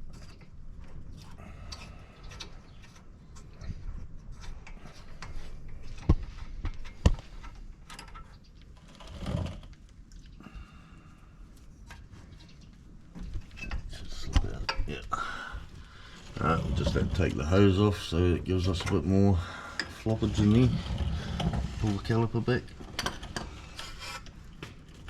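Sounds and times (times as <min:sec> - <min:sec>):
scraping: 0:11.8 - 0:25.0.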